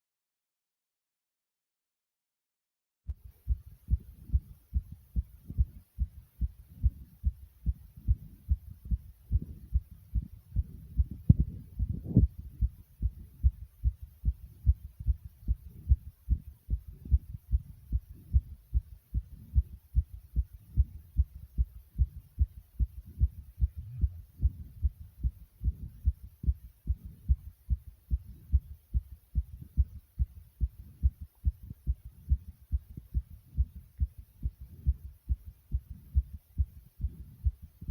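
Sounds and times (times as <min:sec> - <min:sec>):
fast heartbeat thumps: 0:03.1 - 0:37.9.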